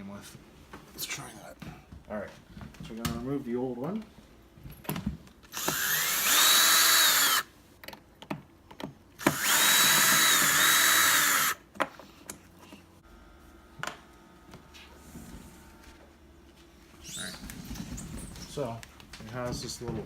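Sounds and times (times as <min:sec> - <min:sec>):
power drill whining: 0:05.5 - 0:07.5, 0:09.2 - 0:11.6.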